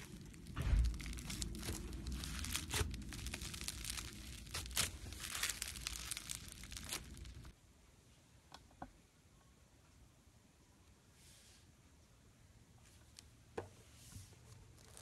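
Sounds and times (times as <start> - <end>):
foam slime crackling and popping: 0.0 - 7.6, 14.6 - 15.0.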